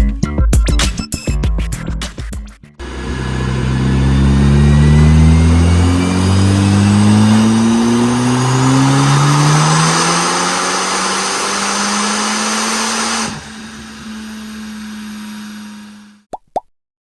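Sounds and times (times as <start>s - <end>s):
turbo car engine pulling: 2.8s - 16.2s.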